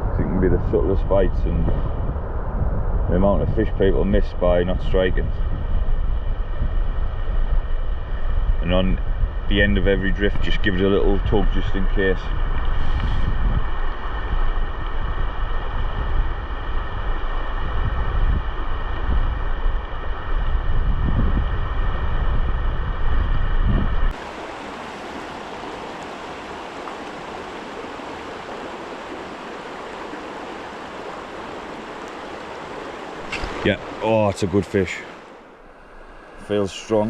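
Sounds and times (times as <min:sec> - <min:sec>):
wind buffeting microphone: 0:00.0 - 0:37.0
river water rushing: 0:24.1 - 0:37.0.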